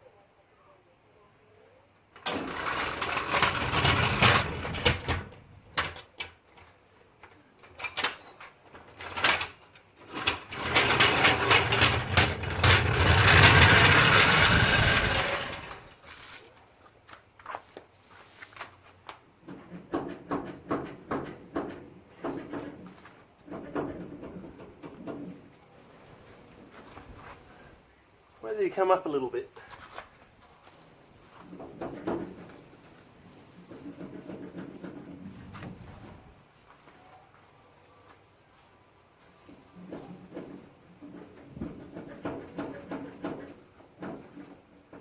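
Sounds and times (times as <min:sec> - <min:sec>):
clicks and knocks: 0:19.4 - 0:25.6, 0:31.4 - 0:33.0.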